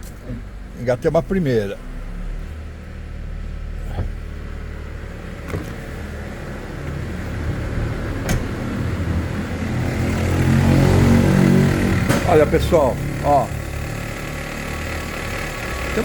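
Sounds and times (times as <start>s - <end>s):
car engine idling: 0.0s - 16.0s
engine vibration noise: 0.0s - 16.0s.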